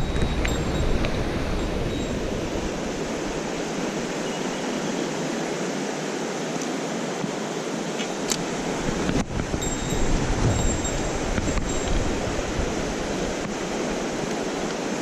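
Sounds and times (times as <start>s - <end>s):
wind rumble on microphone: 0.0s - 4.2s, 8.2s - 15.0s
mountain stream rushing: 0.0s - 15.0s.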